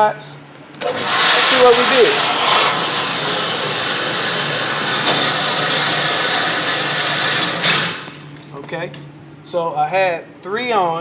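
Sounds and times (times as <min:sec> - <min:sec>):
target carrier motor hiss and hum: 0:00.8 - 0:08.4.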